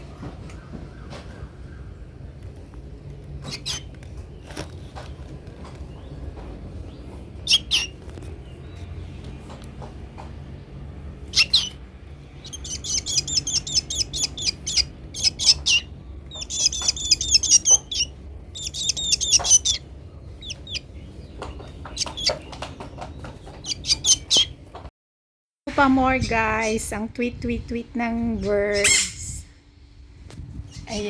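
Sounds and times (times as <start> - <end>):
baby bird chirping: 3.4 - 3.9, 7.4 - 8.0, 11.2 - 24.6, 28.4 - 29.4.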